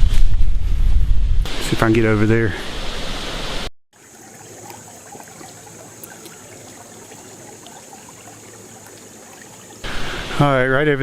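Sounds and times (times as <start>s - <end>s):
water drips and splashes: 4.0s - 9.9s
water trickling over rocks: 4.0s - 9.9s.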